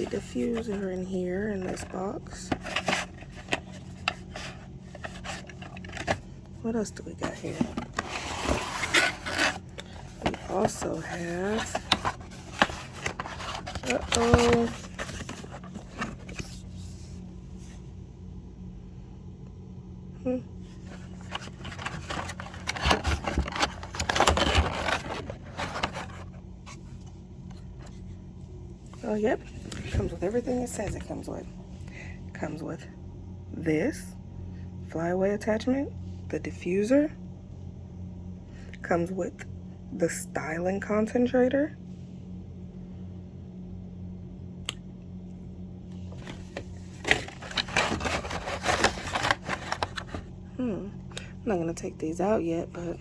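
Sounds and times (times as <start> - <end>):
rustling packaging: 0.0 - 17.3, 20.7 - 28.1, 46.1 - 50.4.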